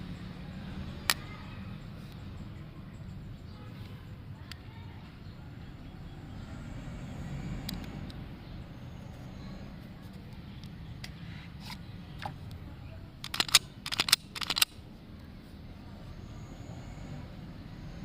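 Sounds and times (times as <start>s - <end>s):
handgun mechanical clicks: 13.2s - 14.8s.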